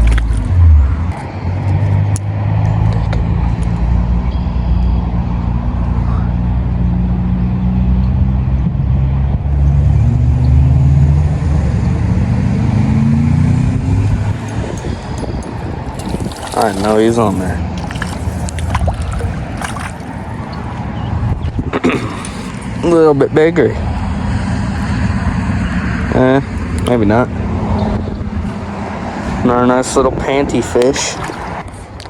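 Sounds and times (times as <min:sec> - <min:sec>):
engine humming: 0:00.0 - 0:05.9, 0:06.9 - 0:32.0.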